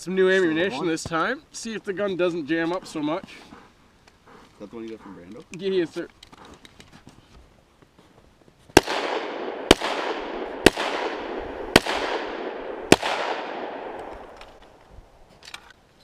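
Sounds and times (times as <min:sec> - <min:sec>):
gunshots with rolling echo: 0:08.8 - 0:15.3.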